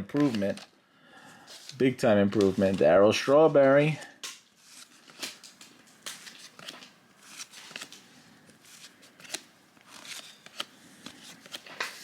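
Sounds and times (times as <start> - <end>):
trading cards flicking and swishing: 3.9 - 12.0.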